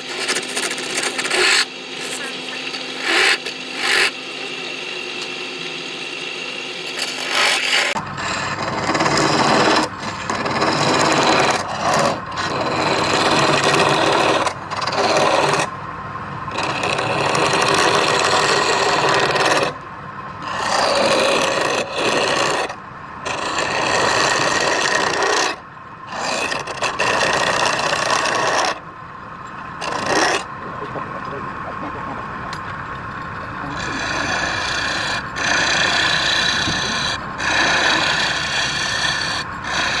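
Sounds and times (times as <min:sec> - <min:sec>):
lathe tool cutting wood: 0:00.0 - 0:15.7, 0:16.5 - 0:19.8, 0:20.4 - 0:28.8, 0:29.8 - 0:30.6, 0:33.1 - 0:40.0
lathe motor humming: 0:00.0 - 0:15.8, 0:16.4 - 0:19.7, 0:29.5 - 0:40.0.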